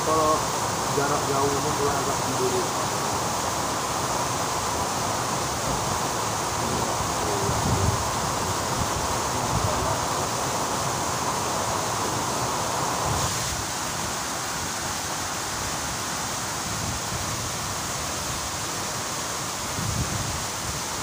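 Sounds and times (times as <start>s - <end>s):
waterfall rushing: 0.0s - 21.0s
wind gusts on microphone: 5.0s - 13.7s, 19.6s - 21.0s.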